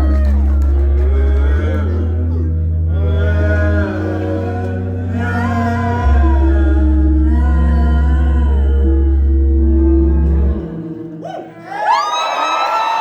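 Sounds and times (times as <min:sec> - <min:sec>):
man singing: 0:00.0 - 0:10.8
deep bass notes: 0:00.0 - 0:11.3.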